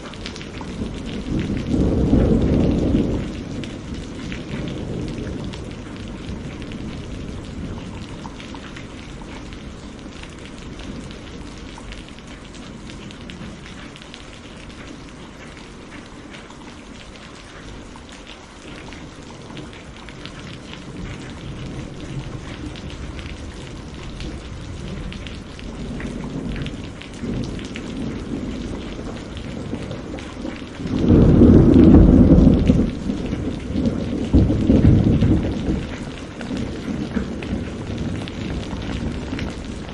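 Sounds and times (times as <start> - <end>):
rolling thunder rumbling: 0.0 - 16.0, 18.7 - 39.9
steady rain falling: 0.0 - 39.9
loud thunder clap: 0.7 - 7.9, 20.9 - 39.9.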